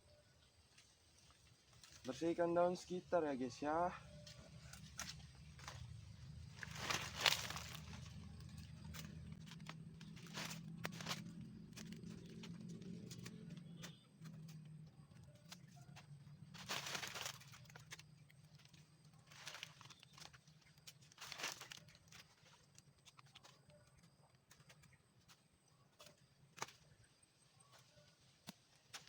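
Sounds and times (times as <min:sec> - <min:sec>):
dry leaves rustling and crackling: 0:04.2 - 0:14.6, 0:15.4 - 0:23.6
twigs snapping: 0:04.5 - 0:25.4, 0:26.0 - 0:27.0.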